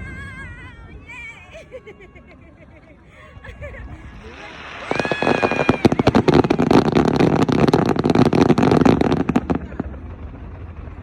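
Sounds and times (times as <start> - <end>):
fireworks bangs and crackles: 4.1 - 11.0.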